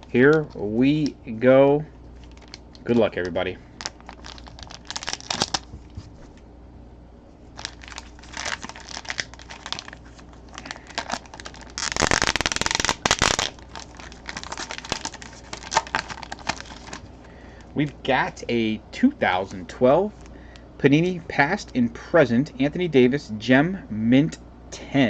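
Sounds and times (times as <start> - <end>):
packaging tearing: 2.2 - 2.6, 3.8 - 5.7, 7.6 - 17.0
packaging crinkling: 2.2 - 6.2, 7.5 - 17.2.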